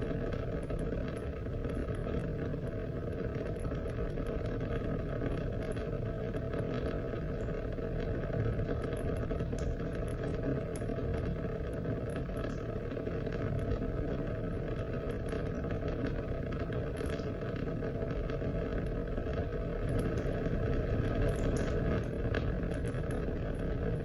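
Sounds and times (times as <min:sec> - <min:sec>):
raindrop ticks: 0:06.8 - 0:14.0, 0:14.6 - 0:17.7, 0:18.3 - 0:24.0
steady rain: 0:18.8 - 0:23.3.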